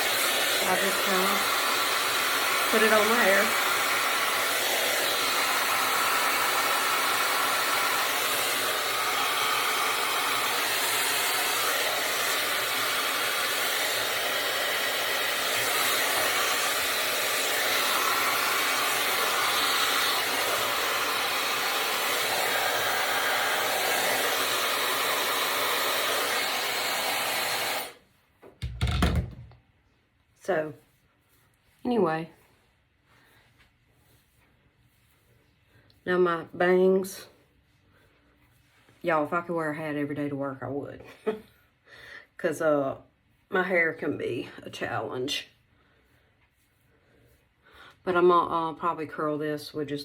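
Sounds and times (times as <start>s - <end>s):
hair dryer running: 0.0s - 29.6s.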